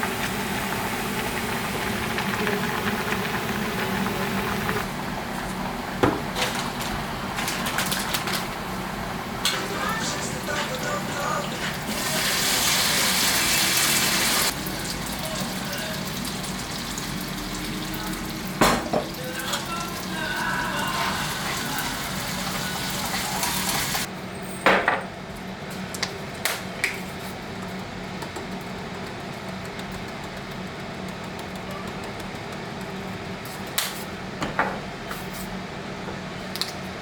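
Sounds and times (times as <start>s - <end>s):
food sizzling in a frying pan: 9.4s - 24.1s.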